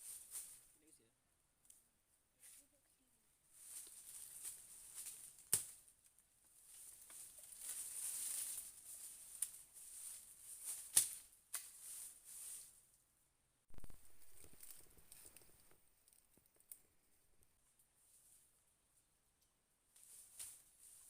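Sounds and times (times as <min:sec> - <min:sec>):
rustling of dry leaves: 0:00.0 - 0:00.8, 0:03.5 - 0:12.8, 0:13.8 - 0:16.0, 0:20.0 - 0:21.0.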